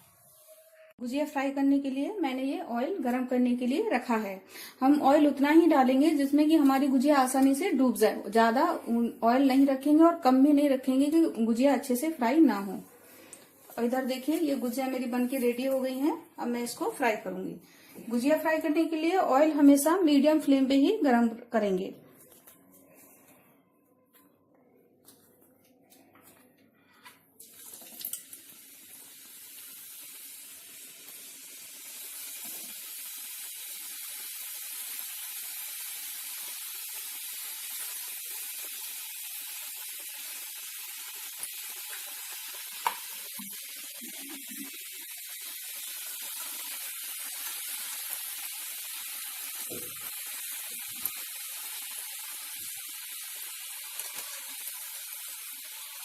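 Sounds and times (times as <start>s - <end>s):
food sizzling in hot oil: 13.8s - 17.1s, 27.4s - 56.0s.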